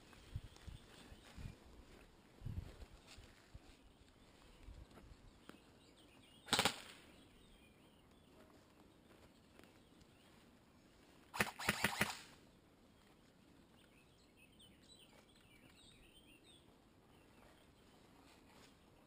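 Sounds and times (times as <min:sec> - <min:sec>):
airsoft gun firing burst: 0:06.5 - 0:06.9, 0:11.3 - 0:12.3.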